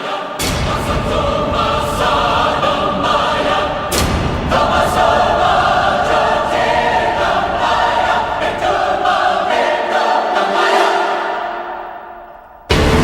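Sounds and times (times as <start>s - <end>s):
choir singing held chords: 0.0s - 13.0s.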